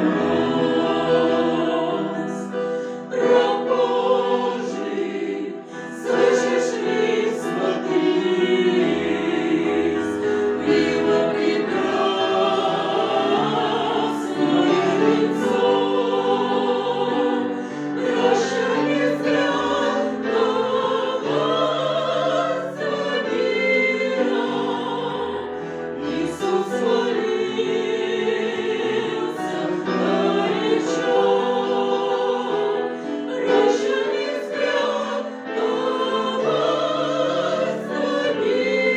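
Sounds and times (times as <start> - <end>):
choir singing: 0.0 - 38.9.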